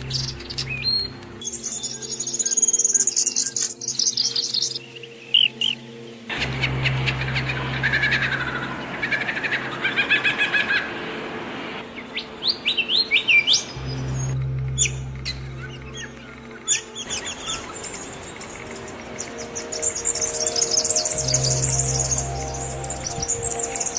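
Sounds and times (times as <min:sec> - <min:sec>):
songbirds chirping and singing: 0:00.0 - 0:11.2, 0:11.8 - 0:23.9
steady low hum: 0:06.3 - 0:09.7, 0:13.7 - 0:23.9.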